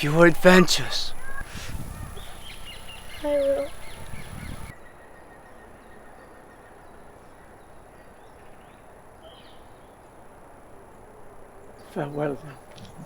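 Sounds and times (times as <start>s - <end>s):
distant bird chirps: 0.0s - 10.3s
low background hiss: 0.0s - 13.0s.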